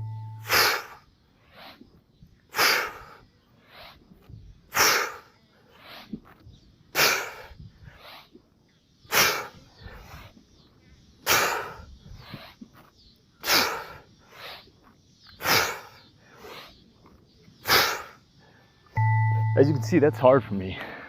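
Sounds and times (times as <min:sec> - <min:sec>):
person exhaling forcefully: 0:00.4 - 0:01.0.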